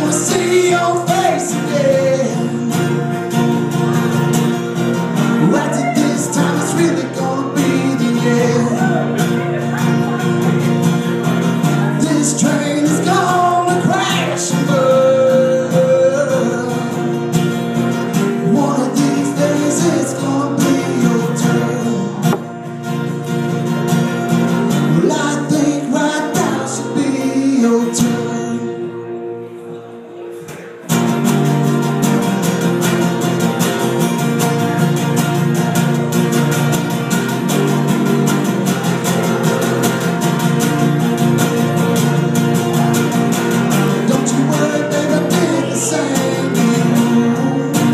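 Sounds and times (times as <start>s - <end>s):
person singing: 0.0s - 4.4s, 5.2s - 10.4s, 11.6s - 17.3s, 18.2s - 22.6s, 24.9s - 29.2s, 43.7s - 47.9s
live band playing: 0.0s - 27.1s, 28.0s - 47.9s.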